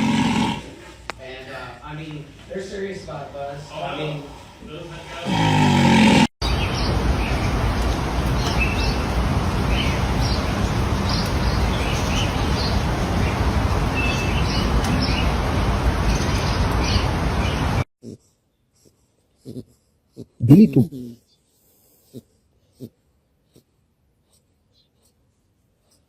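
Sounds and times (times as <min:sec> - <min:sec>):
birds chirping: 0:05.3 - 0:17.8.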